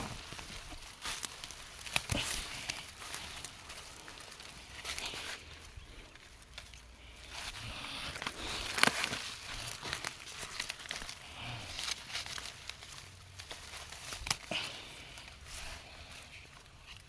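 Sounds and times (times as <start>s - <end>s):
sharp plant stems snapping: 0.0s - 5.4s, 7.8s - 15.2s
leafy plants rustling and crackling: 0.0s - 17.0s.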